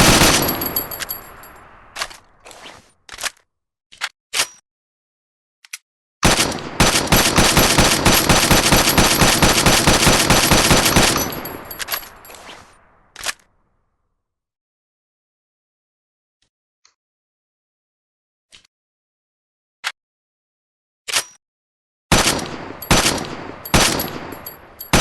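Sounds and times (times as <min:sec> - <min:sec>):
automatic rifle firing: 0:00.0 - 0:02.0, 0:06.2 - 0:12.4, 0:22.1 - 0:25.0.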